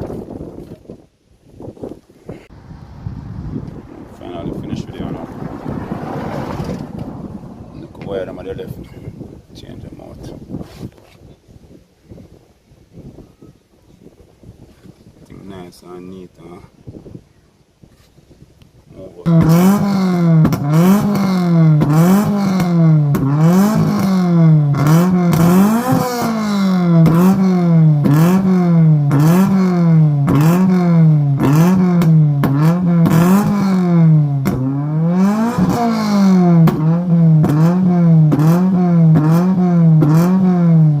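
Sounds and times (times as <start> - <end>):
car engine revving: 2.5 - 8.8, 19.3 - 41.0.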